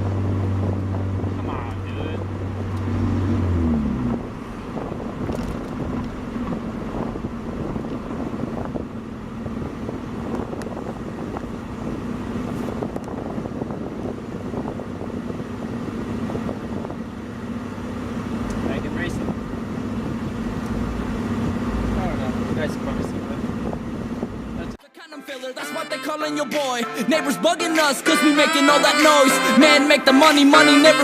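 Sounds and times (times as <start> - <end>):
car engine: 0.0 - 24.8
road noise: 0.0 - 24.8, 26.9 - 31.0.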